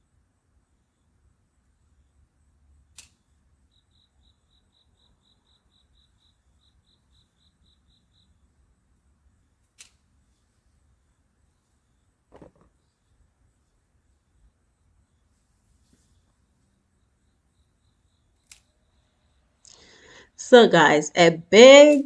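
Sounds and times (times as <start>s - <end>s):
insect chirping: 3.6s - 8.5s, 16.9s - 20.2s.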